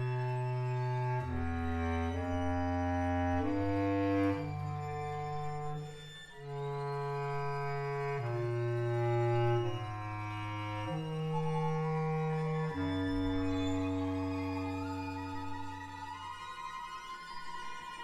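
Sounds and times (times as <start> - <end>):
slow sustained chords: 8.2 - 16.4.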